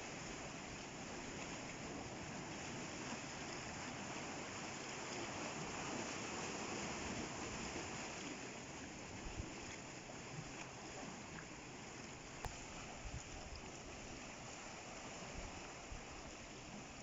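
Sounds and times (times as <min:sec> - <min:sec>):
sea water washing over rocks: 0:00.0 - 0:17.0
small water splashes: 0:00.0 - 0:17.0.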